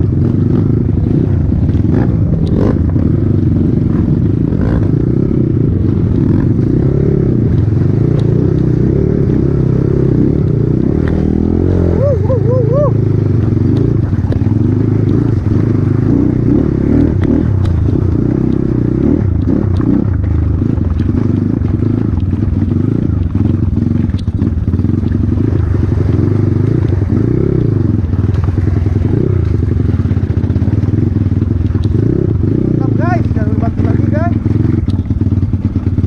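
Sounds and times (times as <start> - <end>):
motorcycle engine revving: 0.0 - 36.0
clatter and knocks: 17.1 - 25.7.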